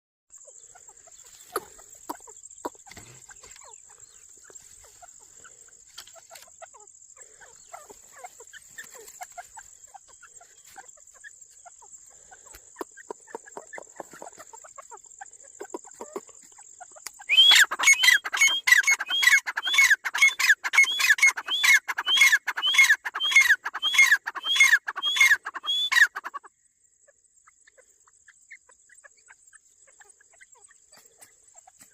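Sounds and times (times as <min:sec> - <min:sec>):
bird calling: 0:00.4 - 0:26.6.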